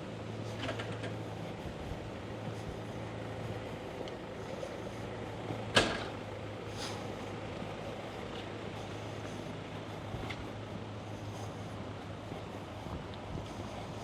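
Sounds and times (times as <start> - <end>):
city ambience hum: 0.0 - 14.0.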